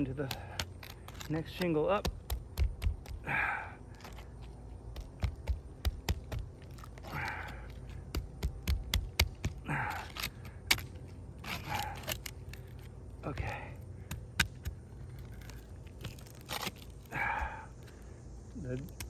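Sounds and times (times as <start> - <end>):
tool scraping asphalt shingles: 0.0 - 17.5
person exhaling: 3.2 - 3.9, 17.1 - 18.2.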